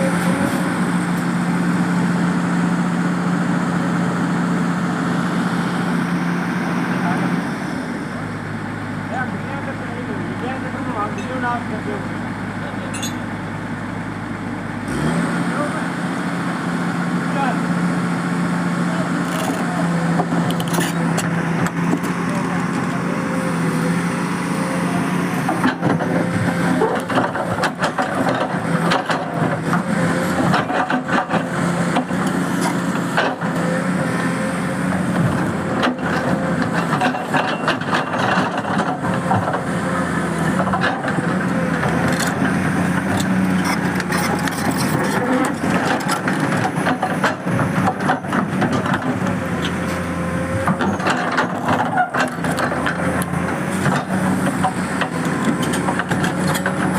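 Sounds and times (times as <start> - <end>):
excavator diesel engine running: 0.0 - 56.9
bucket scraping against rock: 43.3 - 45.6.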